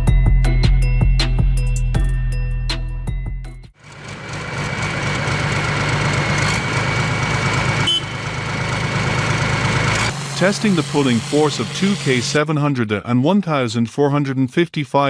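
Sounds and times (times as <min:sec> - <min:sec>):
heavy vehicle engine throbbing: 0:03.8 - 0:12.4
steady high whine: 0:09.9 - 0:12.4.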